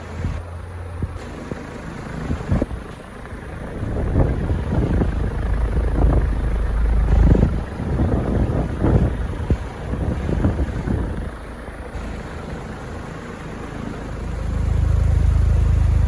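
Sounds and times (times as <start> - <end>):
ceiling fan whooshing rumble: 0.0 - 16.0.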